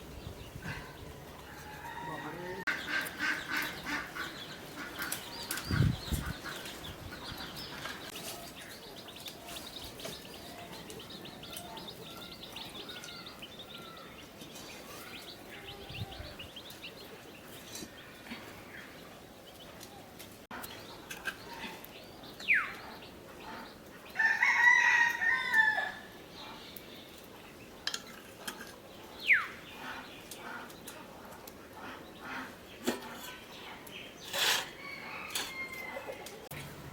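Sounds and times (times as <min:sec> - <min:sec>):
rooster crowing: 0:01.5 - 0:02.7, 0:24.2 - 0:26.1, 0:34.8 - 0:36.3
bird chirps: 0:20.6 - 0:23.6.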